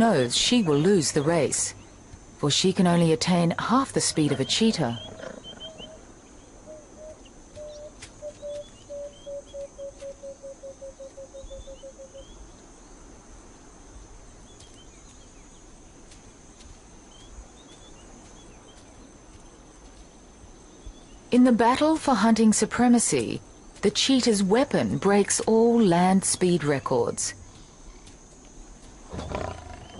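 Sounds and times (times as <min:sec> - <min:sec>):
high insect hum: 0:00.0 - 0:29.9
bird hooting: 0:04.1 - 0:12.4.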